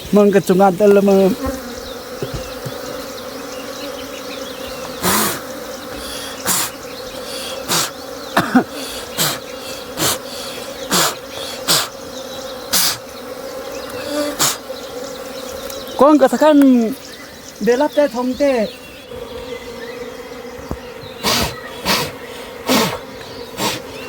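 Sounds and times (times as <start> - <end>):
bees buzzing: 0.0 - 24.0
loud rasping noises: 0.8 - 16.4, 20.3 - 24.0.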